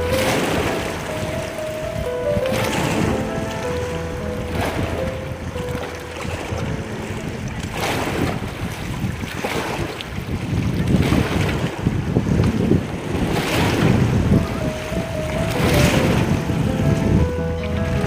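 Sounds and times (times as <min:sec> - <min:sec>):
sea waves breaking on beach: 0:00.0 - 0:18.0
wind rumbling on microphone: 0:00.0 - 0:18.0.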